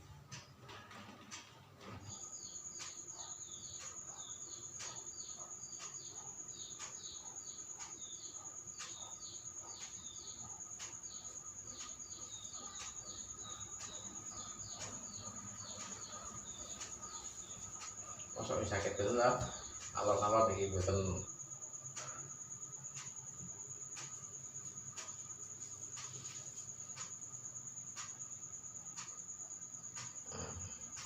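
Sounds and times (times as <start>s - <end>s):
high insect trill: 2.0s - 31.0s
faint ticks: 2.1s - 31.0s.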